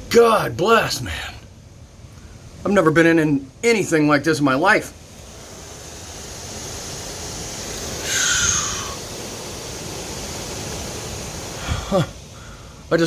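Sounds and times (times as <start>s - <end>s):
hurricane-force wind blowing: 0.0s - 13.0s.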